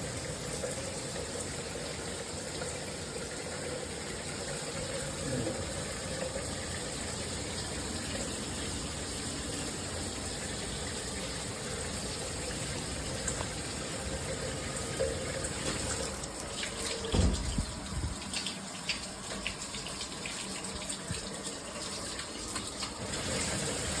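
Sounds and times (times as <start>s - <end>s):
shower water spraying: 1.7s - 24.0s
low thump: 17.1s - 17.7s.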